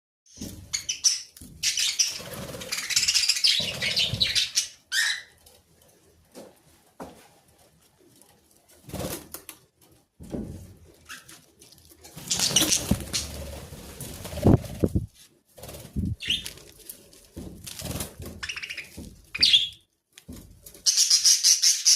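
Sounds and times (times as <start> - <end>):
parrot chirp: 0.7 - 5.4, 16.2 - 16.5, 18.4 - 19.8, 20.8 - 21.9.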